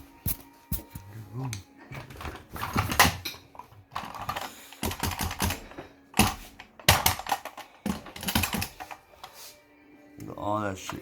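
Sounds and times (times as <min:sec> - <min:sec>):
air gun clicking and rattling: 0:04.0 - 0:09.0.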